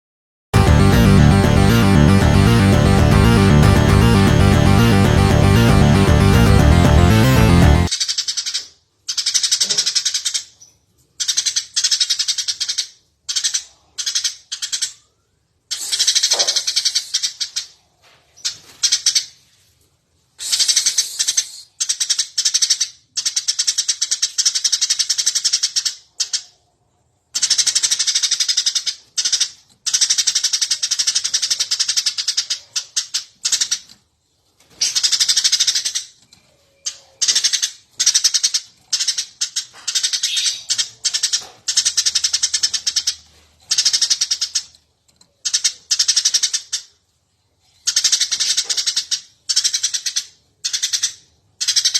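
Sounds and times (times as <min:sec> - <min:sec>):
sparrow chirping: 0:34.8 - 0:44.7.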